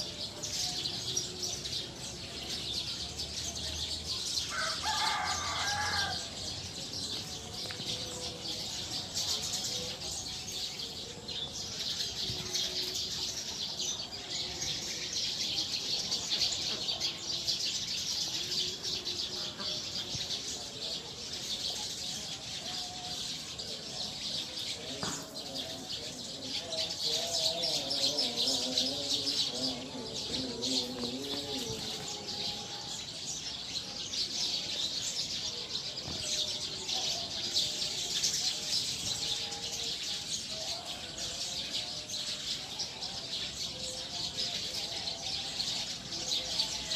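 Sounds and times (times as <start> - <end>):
flock of sparrows chirping: 0.0 - 46.9.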